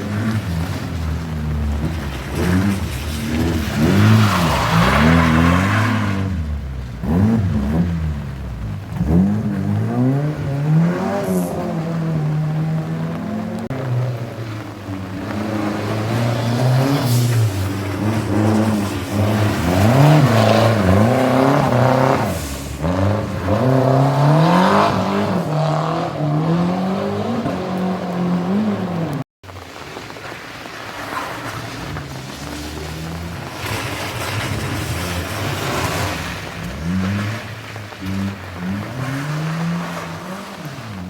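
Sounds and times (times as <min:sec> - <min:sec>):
car engine revving hard: 0:02.3 - 0:29.2.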